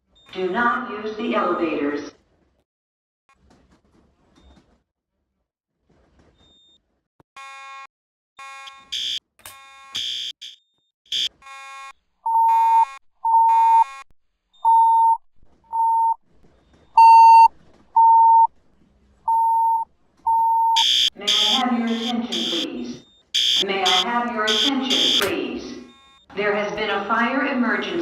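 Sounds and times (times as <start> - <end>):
voice evacuation announcements: 0.3 - 2.1, 21.1 - 28.0
fire alarm beeps: 8.9 - 9.2, 17.0 - 18.5, 19.3 - 25.3.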